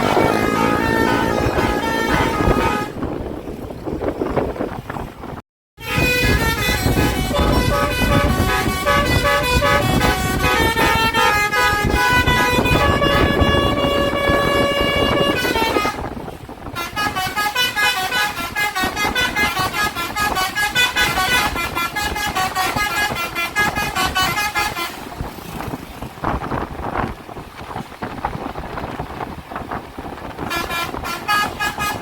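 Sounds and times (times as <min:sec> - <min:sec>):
bus musical horn playing tune: 0:00.0 - 0:03.2, 0:05.8 - 0:25.3, 0:30.4 - 0:32.0
bus engine and road noise: 0:00.0 - 0:32.0.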